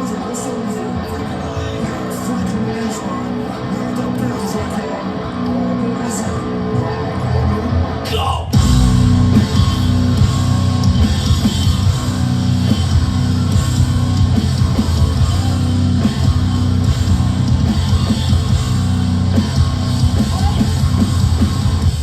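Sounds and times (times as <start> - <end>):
distorted electric guitar riff: 0.0 - 22.0
drum kit: 8.5 - 22.0.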